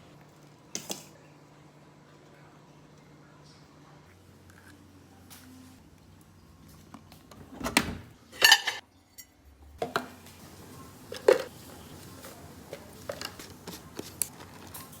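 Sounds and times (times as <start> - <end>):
kitchenware clinking and knocking: 8.3 - 10.2, 11.1 - 11.5.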